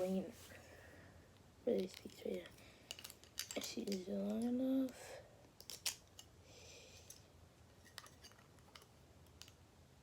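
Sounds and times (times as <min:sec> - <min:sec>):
small metal parts clicking: 0:01.8 - 0:04.6, 0:05.6 - 0:06.3, 0:07.8 - 0:09.6.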